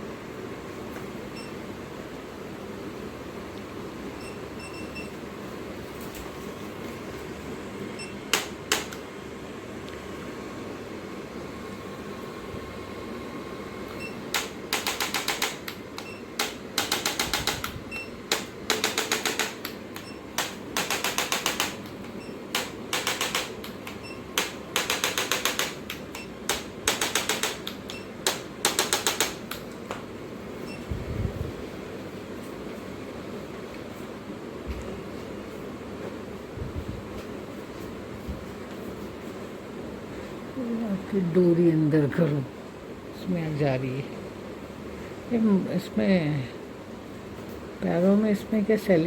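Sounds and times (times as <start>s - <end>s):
rapid mechanical clicking: 14.3s - 29.7s.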